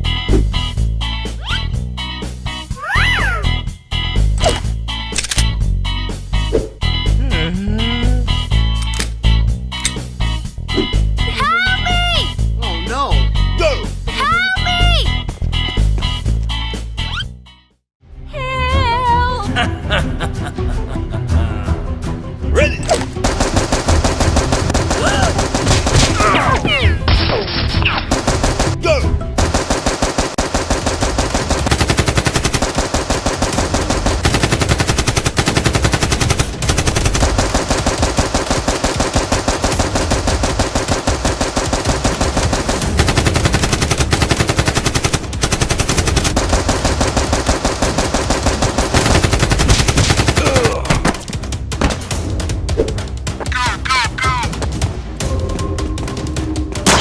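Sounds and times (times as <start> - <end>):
rapid automatic gunfire: 23.2 - 26.2, 28.1 - 28.8, 29.4 - 50.8.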